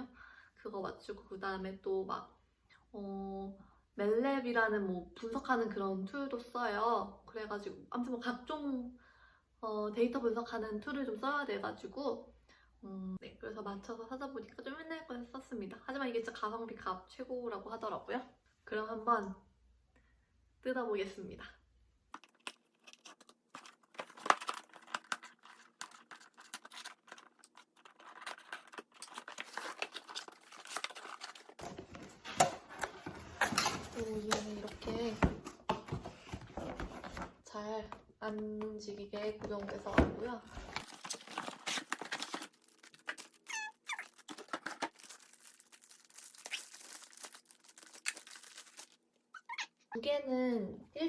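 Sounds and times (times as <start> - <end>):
packaging rustling and crinkling: 22.2 - 37.4, 39.2 - 49.1
brief squeak: 49.4 - 49.8.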